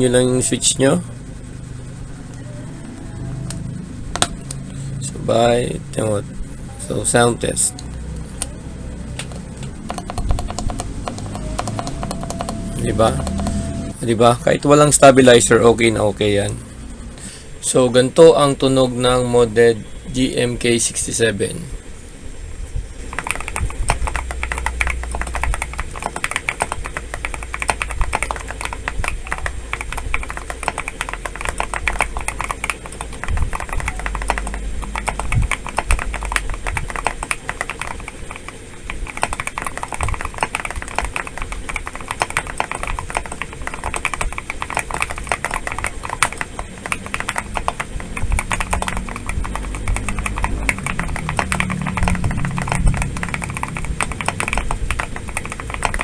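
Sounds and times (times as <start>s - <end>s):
mechanical keyboard keystroke clacks: 7.7s - 13.8s, 23.0s - 56.0s.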